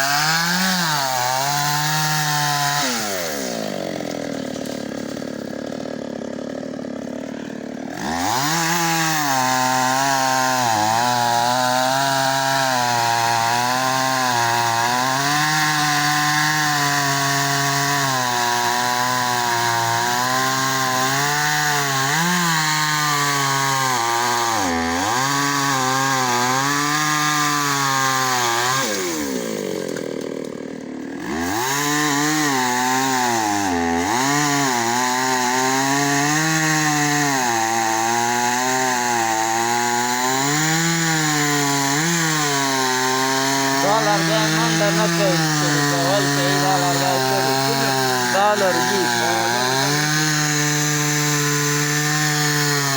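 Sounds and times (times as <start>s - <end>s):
chainsaw cutting wood: 0.0s - 52.9s.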